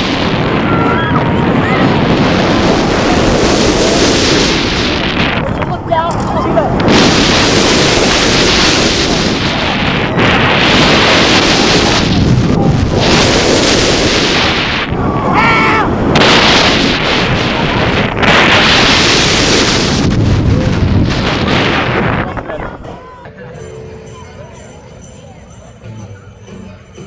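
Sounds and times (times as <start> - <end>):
wind rushing over microphone: 0.0 - 23.4
wavering high tone: 22.9 - 27.0.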